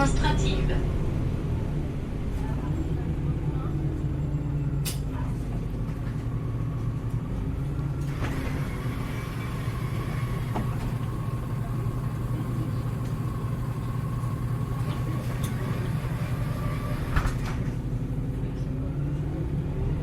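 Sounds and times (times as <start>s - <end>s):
bus engine running: 0.0s - 20.0s.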